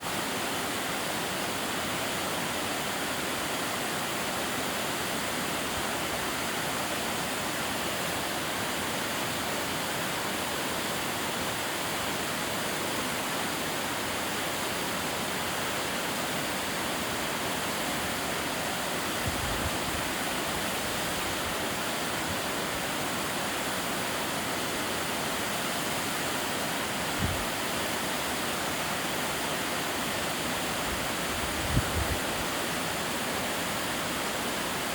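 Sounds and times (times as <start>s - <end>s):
waterfall rushing: 0.0s - 34.9s.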